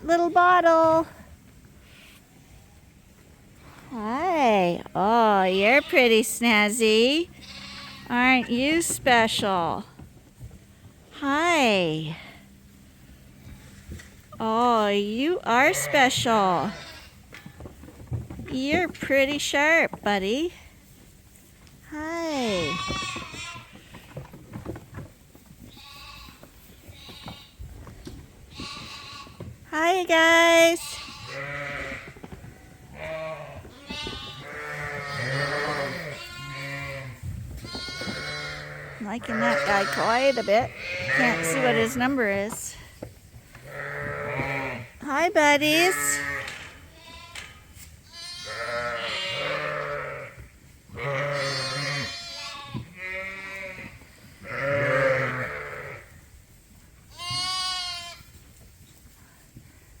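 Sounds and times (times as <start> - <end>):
sheep bleating: 7.3 - 8.7, 22.4 - 23.8, 30.7 - 37.2, 37.8 - 42.2, 43.6 - 47.4, 48.1 - 50.4, 51.0 - 56.1, 57.1 - 58.2.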